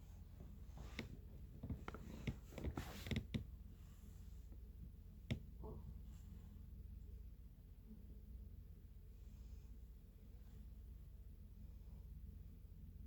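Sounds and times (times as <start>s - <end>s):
soft rustling: 0.0s - 6.7s.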